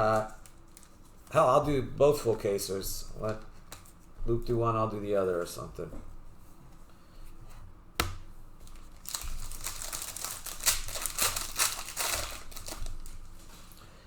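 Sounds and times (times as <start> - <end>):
plastic wrapping tearing and crinkling: 0.0 - 1.6, 8.6 - 13.8.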